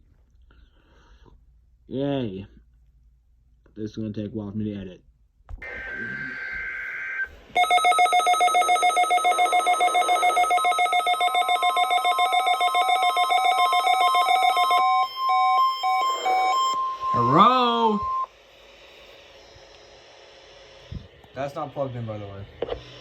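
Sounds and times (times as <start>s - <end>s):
buzzy data burst: 5.6s - 7.8s, 16.0s - 23.0s
pulsing warbling alarm: 5.6s - 18.3s.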